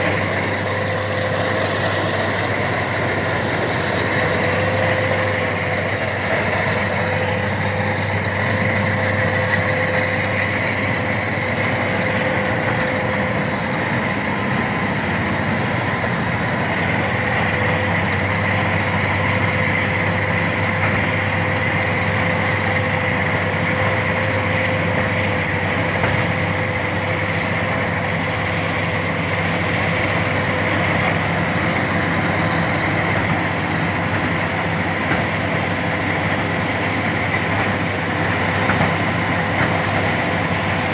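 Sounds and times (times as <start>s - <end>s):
combine harvester running: 0.0s - 40.9s.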